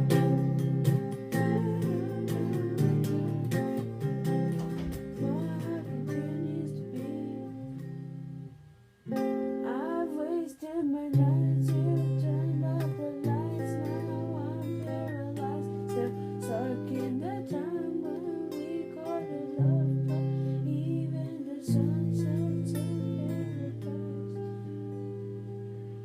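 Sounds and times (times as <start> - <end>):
acoustic guitar chords: 0.0 - 26.0
person humming a melody: 1.0 - 3.8, 9.6 - 26.0.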